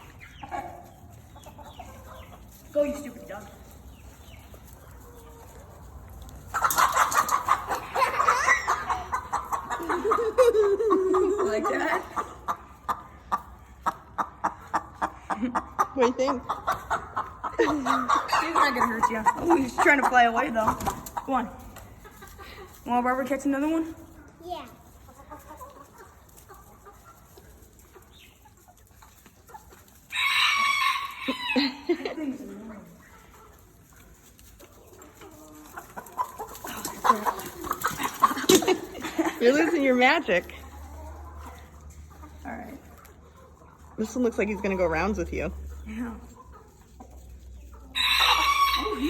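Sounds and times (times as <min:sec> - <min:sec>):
chicken squawking and clucking: 0:04.6 - 0:22.8, 0:25.1 - 0:33.9, 0:35.0 - 0:44.9, 0:45.6 - 0:49.0
chicken squawk: 0:06.5 - 0:10.5, 0:30.1 - 0:32.0, 0:47.8 - 0:49.0.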